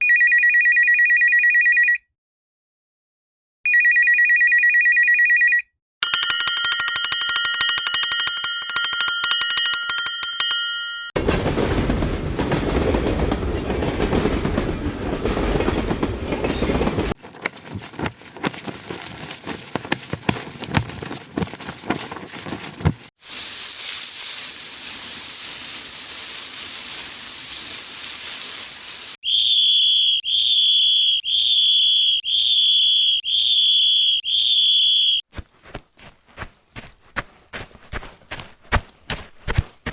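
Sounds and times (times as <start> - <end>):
bell ringing rapidly: 6.0 - 11.2
steady hiss: 23.2 - 29.2
whistle blasts: 29.2 - 35.2.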